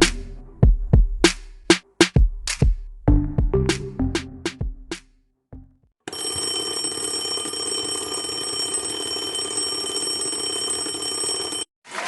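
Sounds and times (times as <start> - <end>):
alarm bell ringing: 6.1 - 11.7.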